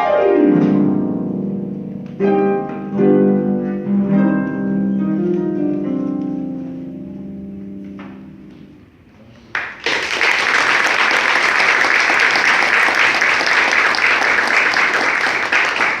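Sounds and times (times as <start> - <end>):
audience applause: 9.5 - 16.0.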